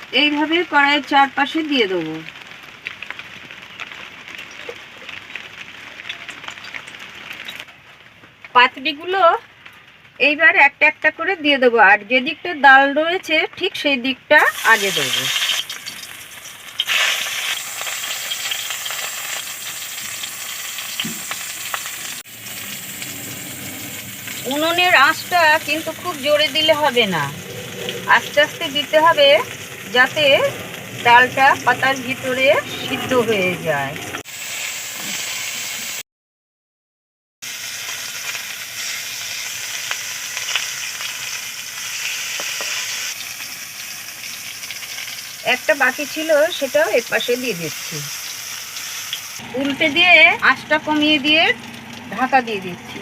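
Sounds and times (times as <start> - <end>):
parcels sizzling in hot oil: 0.0 - 9.9, 14.4 - 36.0, 37.4 - 53.0
small crackles and pops: 0.2 - 10.2, 15.2 - 23.0, 37.6 - 45.5
light crackles: 2.2 - 8.6, 9.4 - 10.2.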